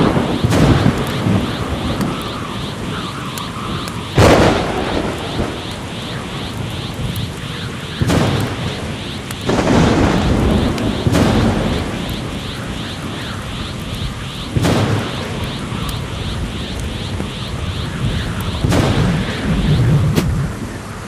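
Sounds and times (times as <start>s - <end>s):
thunder cracks: 0.0s - 20.7s
steady rain: 0.0s - 21.0s.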